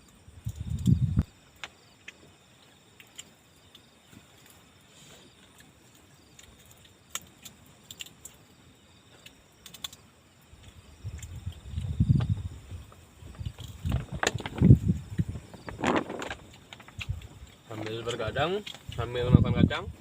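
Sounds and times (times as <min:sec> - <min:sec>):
small sharp clicks and crackles: 0:00.0 - 0:04.7, 0:05.3 - 0:08.5, 0:09.1 - 0:12.3, 0:12.9 - 0:19.1
wind buffeting microphone: 0:00.3 - 0:01.3, 0:10.9 - 0:17.5, 0:18.8 - 0:20.0.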